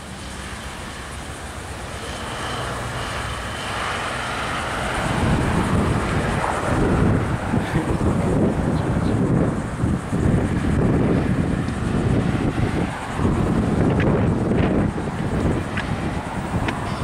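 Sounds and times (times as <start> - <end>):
diesel locomotive approaching: 0.0 - 17.0
train rolling rumble: 4.8 - 17.0.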